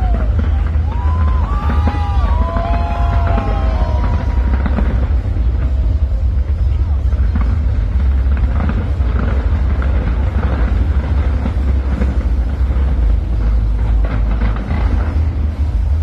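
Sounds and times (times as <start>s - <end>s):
fireworks rumbling and crackling: 0.0s - 16.0s.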